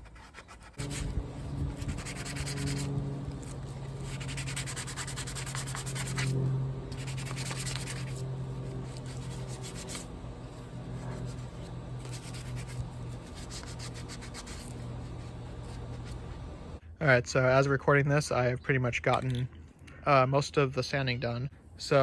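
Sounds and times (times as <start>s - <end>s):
electric sander on plastic: 0.7s - 16.2s.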